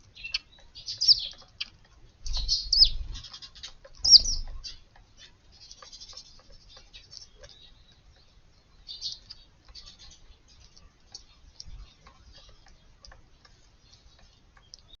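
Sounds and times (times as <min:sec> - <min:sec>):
sharp ticks: 0:00.0 - 0:08.3
sparrows chirping: 0:00.0 - 0:15.0.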